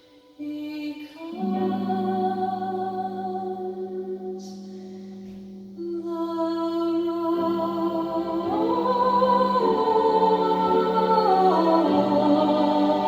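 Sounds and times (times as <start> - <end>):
wordless singing in held notes: 6.9 - 13.0.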